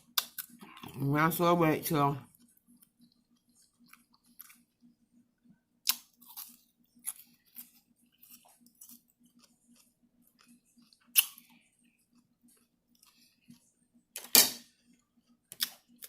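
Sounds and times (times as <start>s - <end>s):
person chewing: 0.0s - 1.0s, 2.3s - 5.0s, 5.8s - 13.8s, 14.8s - 16.0s.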